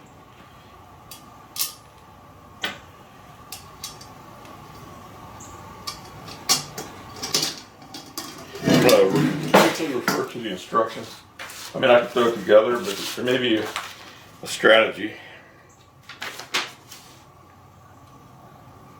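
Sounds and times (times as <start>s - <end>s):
metal parts clicking and clinking: 1.1s - 1.8s, 3.5s - 4.1s, 5.8s - 9.0s.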